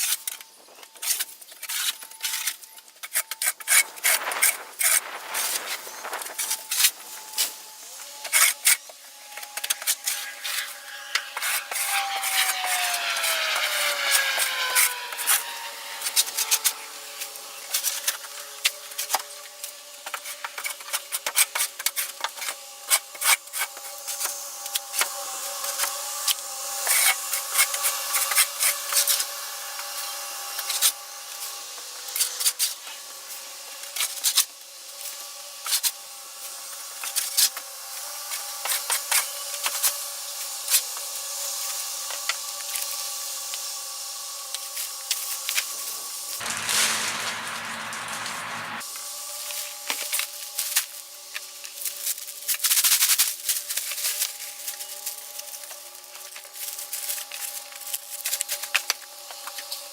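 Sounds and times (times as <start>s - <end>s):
shovel scraping bedding: 1.0s - 8.9s, 46.3s - 48.9s.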